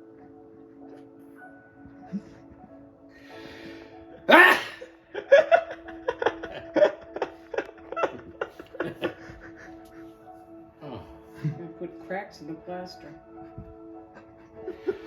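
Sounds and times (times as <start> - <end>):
rhythmic laughter: 4.2 - 11.7, 13.9 - 15.0
man sneezing loudly: 4.3 - 4.8.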